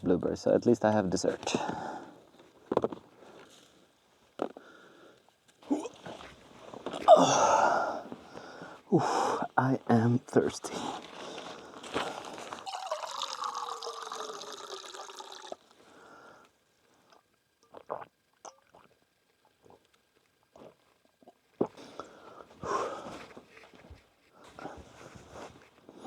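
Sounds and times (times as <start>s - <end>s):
water pouring: 12.3s - 15.8s.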